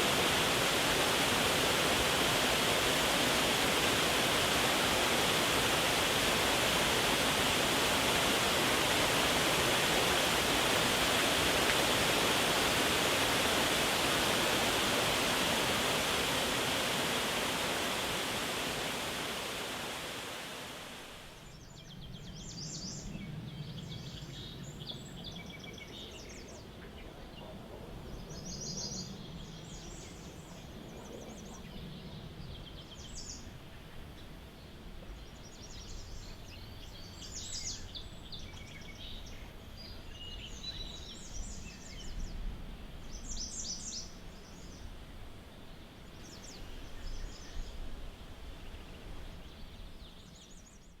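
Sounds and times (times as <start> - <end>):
waterfall rushing: 0.0 - 21.4.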